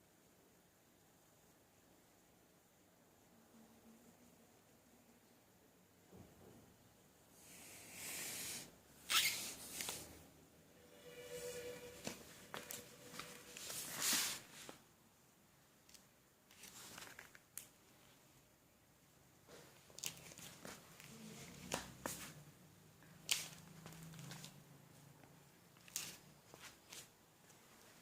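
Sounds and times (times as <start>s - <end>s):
rustling: 10.9s - 14.9s, 15.9s - 18.3s.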